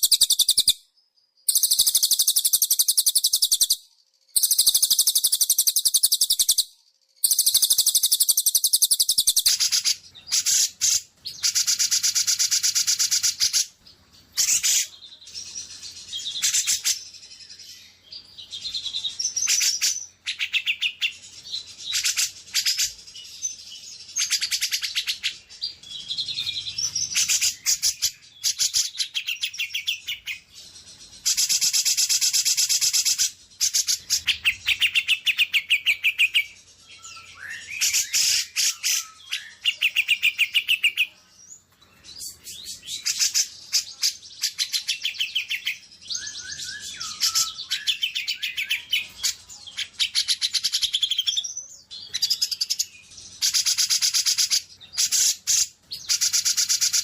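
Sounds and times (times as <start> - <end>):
songbird trilling: 1.5 - 3.8, 4.4 - 6.6, 7.2 - 10.7.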